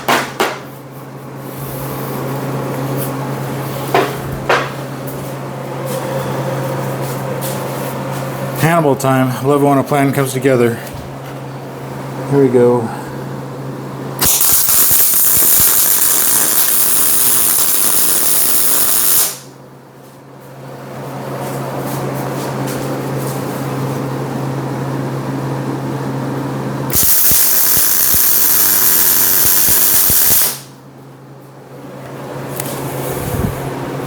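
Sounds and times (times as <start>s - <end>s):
steady low hum: 0.0s - 34.0s
welding arc crackling and sizzling: 14.2s - 19.5s, 26.9s - 30.7s.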